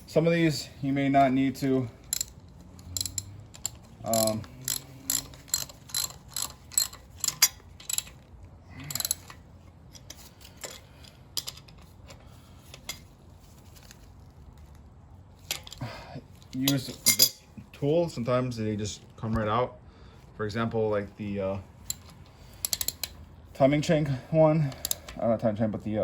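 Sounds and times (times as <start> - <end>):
tool handling: 1.1 - 14.0, 16.4 - 17.4
ratchet wrench clicking: 2.0 - 8.2, 8.9 - 9.4, 21.8 - 23.2, 24.8 - 25.1.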